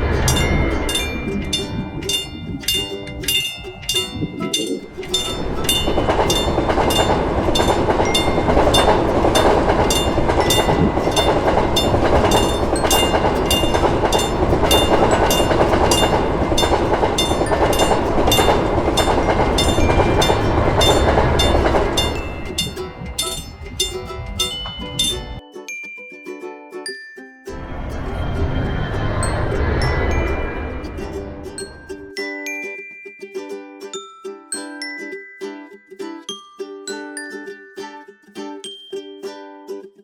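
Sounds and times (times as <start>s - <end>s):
level crossing warning bell ringing: 0.0s - 25.4s, 27.5s - 32.3s
train rumble: 0.0s - 25.4s, 27.5s - 32.1s.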